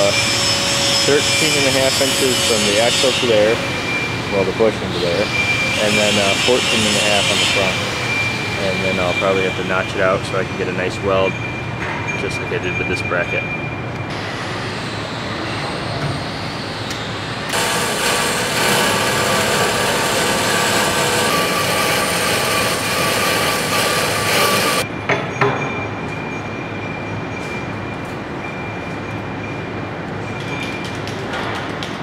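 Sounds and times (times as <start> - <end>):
power tool cutting steel: 0.0 - 4.4, 5.0 - 9.7, 17.4 - 24.8.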